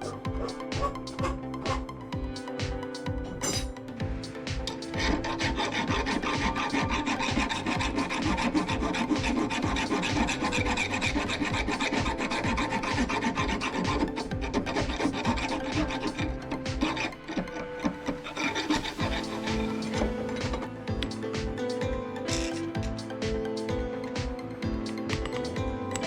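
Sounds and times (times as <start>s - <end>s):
hacksaw rasping through steel: 5.0s - 21.2s.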